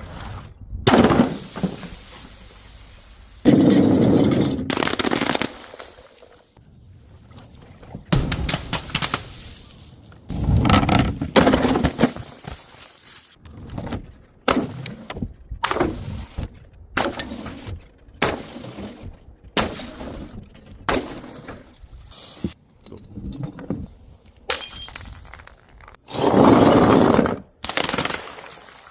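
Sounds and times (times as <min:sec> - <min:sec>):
glass bottles shattering: 0:05.3 - 0:06.6, 0:24.5 - 0:26.0, 0:28.0 - 0:28.9.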